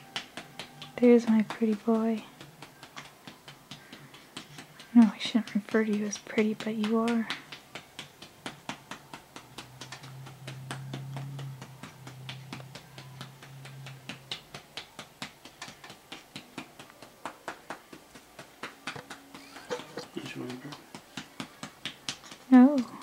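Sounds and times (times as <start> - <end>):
hand patting baby's back: 17.9 - 22.3.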